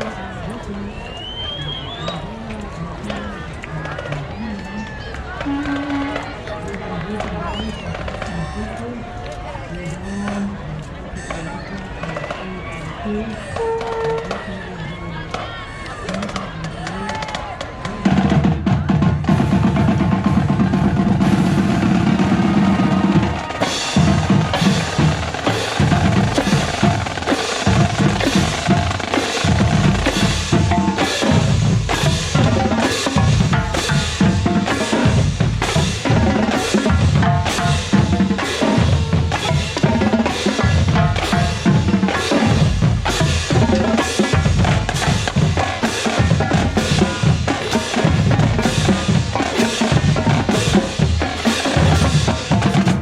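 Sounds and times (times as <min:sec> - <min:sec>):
marching band playing: 0:00.0 - 0:14.6, 0:15.3 - 0:53.0
snare drum rolls: 0:16.1 - 0:53.0
bass drums thumping: 0:18.2 - 0:51.2.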